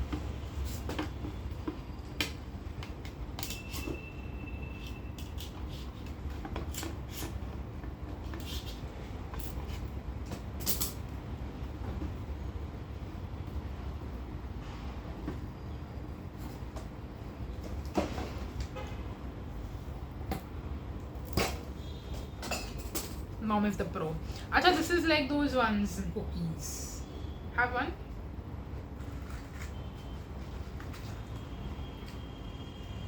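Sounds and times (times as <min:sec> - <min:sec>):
tape pulling squeak: 0:03.4 - 0:05.9.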